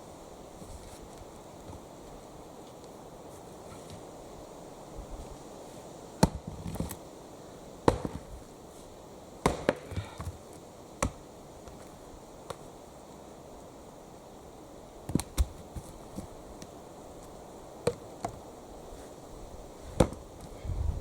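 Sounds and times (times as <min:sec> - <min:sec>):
axe chopping wood: 0:06.2 - 0:06.9, 0:07.8 - 0:08.3, 0:09.4 - 0:10.3, 0:11.0 - 0:11.2, 0:20.0 - 0:20.2.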